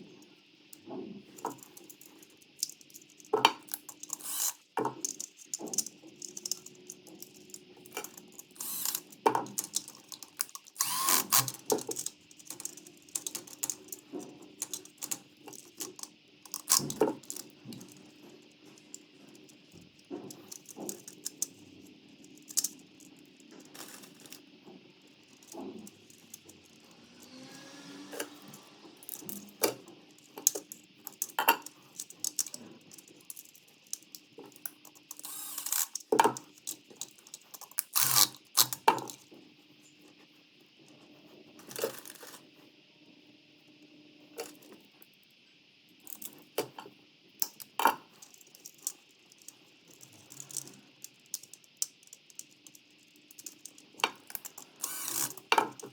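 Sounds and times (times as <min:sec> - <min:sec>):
small hard objects clicking and rattling: 0:01.3 - 0:24.4, 0:25.1 - 0:26.6, 0:29.0 - 0:39.2, 0:47.4 - 0:55.9.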